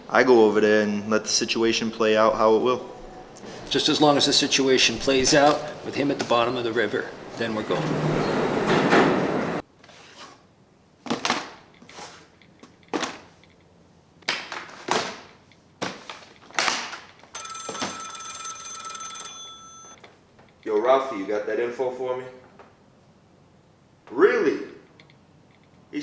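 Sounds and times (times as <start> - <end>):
telephone ringing: 17.4 - 20.0.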